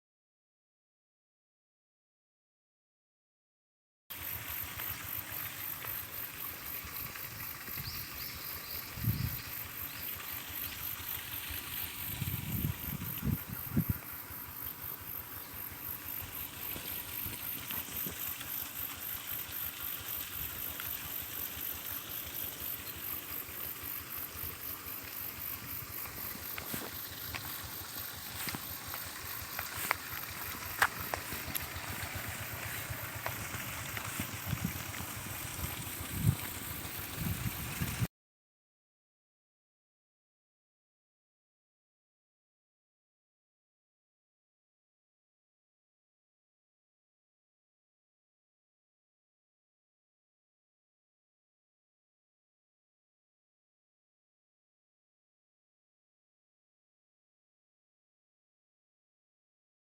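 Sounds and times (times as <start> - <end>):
insects chirring: 4.1 - 38.1.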